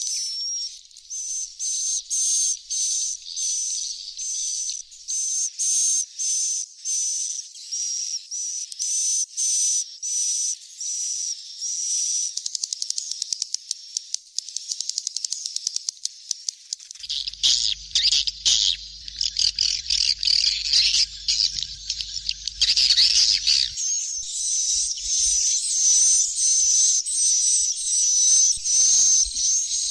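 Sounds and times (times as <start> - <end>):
bird calls clicking and chirping: 12.2 - 29.9.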